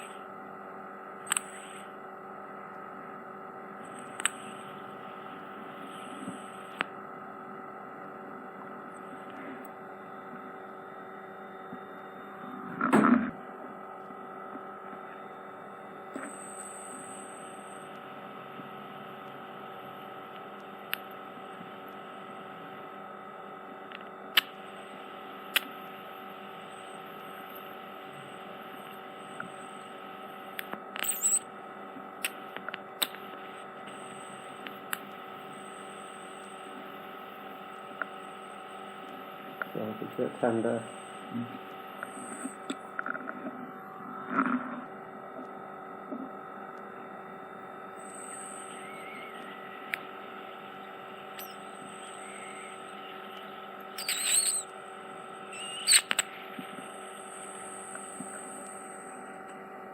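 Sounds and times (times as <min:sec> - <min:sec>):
electrical hum of equipment: 0:00.0 - 0:59.9
sharp clicks and crackles: 0:01.2 - 0:01.8, 0:03.8 - 0:04.7, 0:25.5 - 0:25.8, 0:32.2 - 0:34.0, 0:55.8 - 0:58.8.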